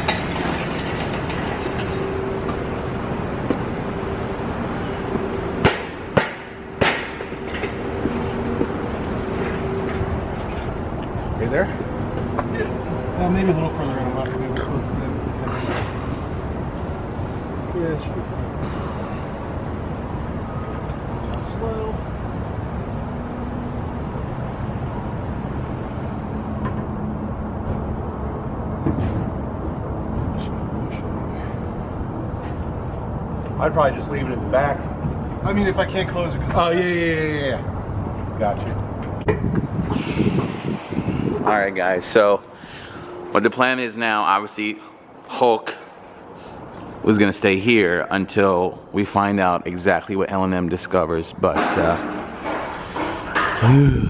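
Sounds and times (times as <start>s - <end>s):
vehicle engine rumbling: 0.0s - 43.8s
sharp knocks: 5.6s - 7.7s.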